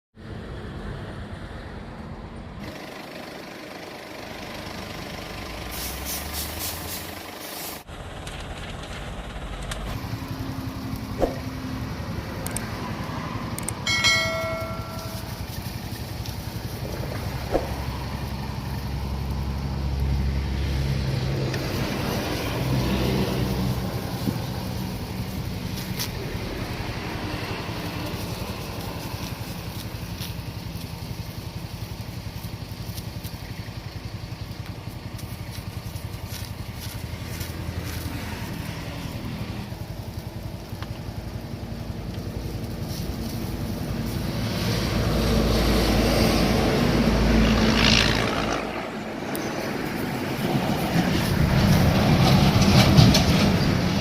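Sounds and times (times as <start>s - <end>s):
traffic rumble: 0.2s - 54.0s
clicks: 12.4s - 12.7s.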